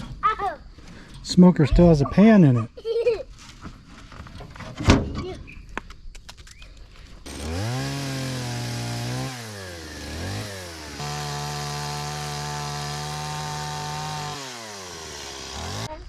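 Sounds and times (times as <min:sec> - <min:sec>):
small petrol engine starting: 0:07.3 - 0:16.0.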